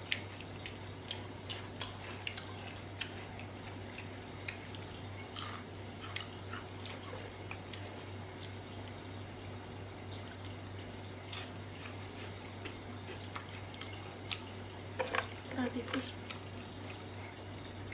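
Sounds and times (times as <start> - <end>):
person chewing crunchy chips: 0.0 - 8.7, 10.4 - 15.1.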